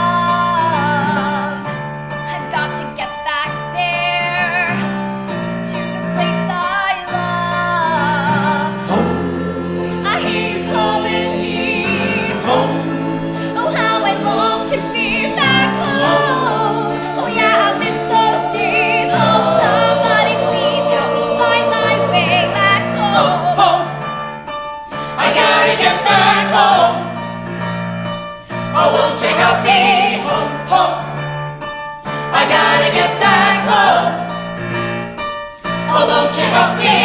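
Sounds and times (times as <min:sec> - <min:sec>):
steady musical accompaniment: 0:03.8 - 0:37.0
person singing with vibrato: 0:06.0 - 0:24.0.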